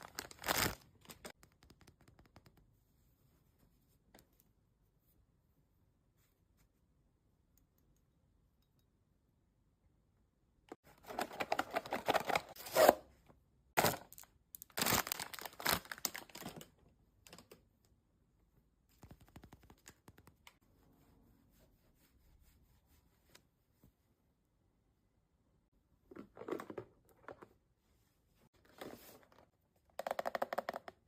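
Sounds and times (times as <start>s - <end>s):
packaging tearing and crinkling: 0.0s - 1.3s, 13.8s - 16.4s.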